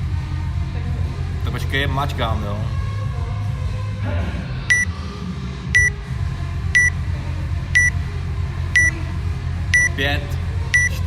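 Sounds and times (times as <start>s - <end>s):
timer beeping: 6.8s - 7.0s, 8.8s - 9.0s, 9.8s - 10.0s, 10.8s - 11.0s.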